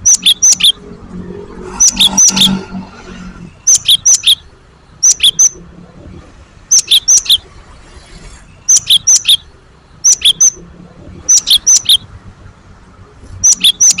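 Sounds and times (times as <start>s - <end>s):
bird singing high whistled notes: 0.0s - 0.8s, 1.6s - 2.8s, 3.6s - 5.6s, 6.7s - 7.5s, 8.6s - 10.6s, 11.3s - 12.1s, 13.4s - 14.0s.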